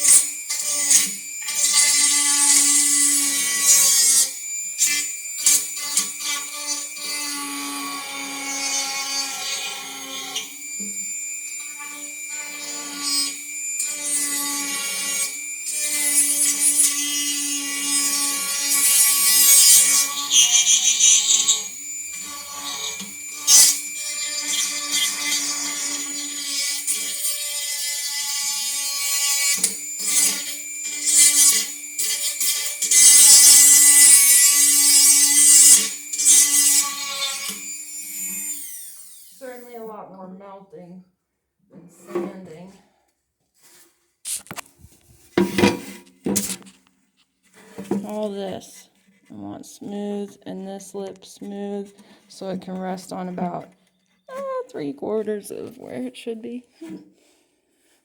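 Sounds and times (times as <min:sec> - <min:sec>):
rotary tool grinding plastic: 0:00.0 - 0:39.7.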